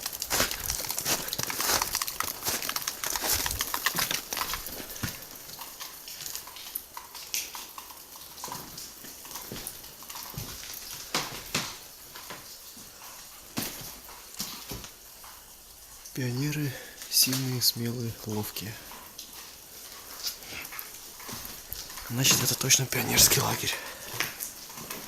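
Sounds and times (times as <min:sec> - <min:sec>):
footsteps crunching through debris: 0:00.0 - 0:06.4, 0:09.4 - 0:12.4, 0:19.8 - 0:25.0.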